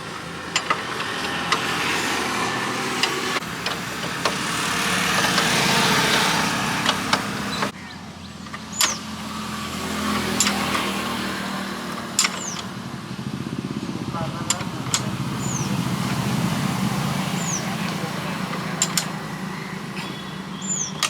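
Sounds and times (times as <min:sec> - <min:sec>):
vehicle engine running: 0:00.0 - 0:21.0
sharp clicks and knocks: 0:00.4 - 0:07.8, 0:08.4 - 0:09.1, 0:10.1 - 0:11.1, 0:11.9 - 0:12.8, 0:14.4 - 0:16.4, 0:17.4 - 0:19.4.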